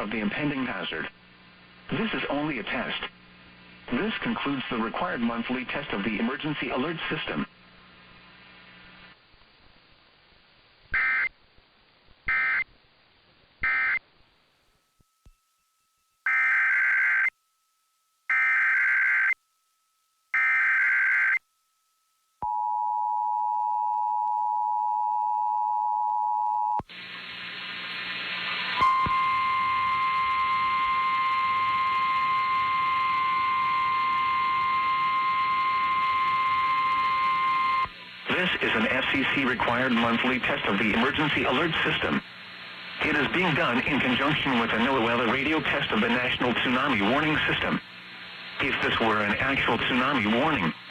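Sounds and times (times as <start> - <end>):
radio hiss: 0.0 - 11.3, 26.8 - 50.9.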